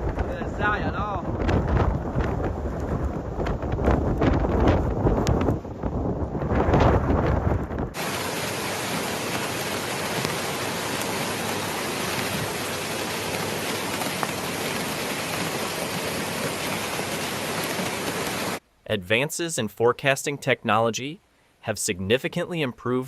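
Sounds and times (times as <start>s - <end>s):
wind gusting against microphone: 0.0s - 18.6s
heavy rain hiss: 8.0s - 18.6s.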